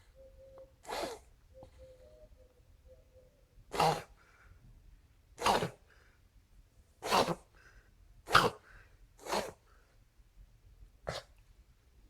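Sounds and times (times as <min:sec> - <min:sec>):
dog sneeze-like breath bursts: 0:00.8 - 0:01.3, 0:05.4 - 0:05.8, 0:07.0 - 0:07.5, 0:08.3 - 0:09.7, 0:11.1 - 0:11.4.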